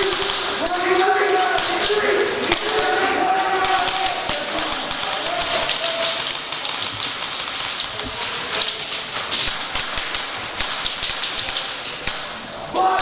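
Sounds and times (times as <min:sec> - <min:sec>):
distant shouting: 0:00.0 - 0:06.7, 0:12.5 - 0:13.0
airsoft guns firing: 0:00.0 - 0:13.0.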